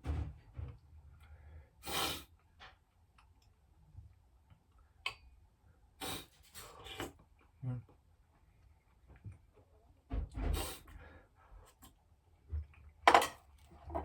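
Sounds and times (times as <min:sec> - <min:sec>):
person breathing: 0:10.8 - 0:11.8.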